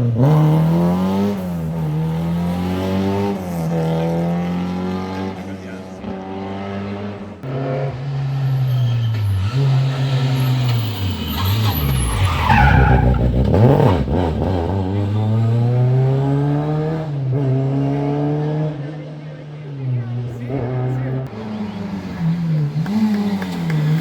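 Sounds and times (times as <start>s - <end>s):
rally car engine revving: 0.0s - 24.0s
tyre squeal: 8.2s - 13.4s.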